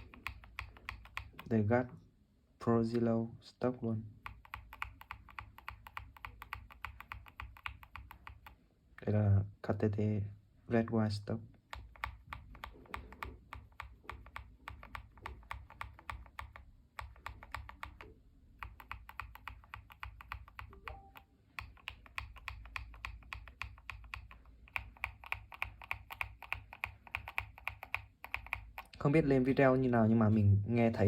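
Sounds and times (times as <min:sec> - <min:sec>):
mechanical keyboard typing: 0:00.0 - 0:01.5, 0:04.2 - 0:08.6, 0:11.7 - 0:29.8.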